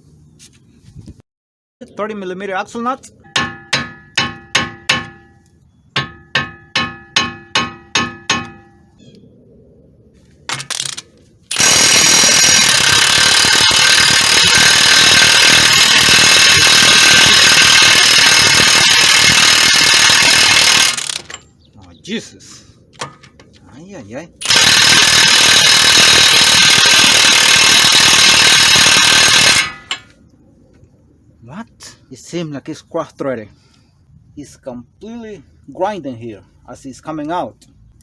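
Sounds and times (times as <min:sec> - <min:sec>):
impact wrench rattling: 0:03.3 - 0:05.4, 0:06.0 - 0:08.7, 0:10.5 - 0:21.5, 0:24.4 - 0:30.1
metal-on-metal hammer blows: 0:03.3 - 0:08.8.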